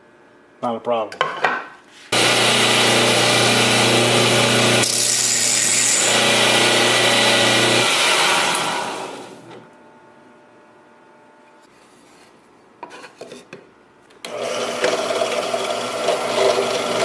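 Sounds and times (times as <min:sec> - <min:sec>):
screw grinding on sander belt: 0:02.1 - 0:09.0, 0:14.3 - 0:17.0
belt sander running: 0:02.1 - 0:09.6, 0:14.3 - 0:17.0.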